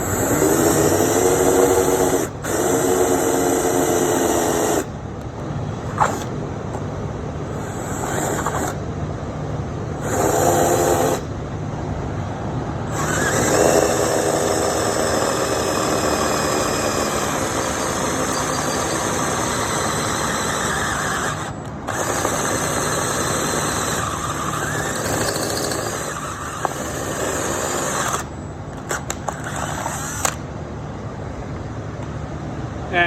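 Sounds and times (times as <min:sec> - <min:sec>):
power tool cutting sheet metal: 0:12.9 - 0:28.3.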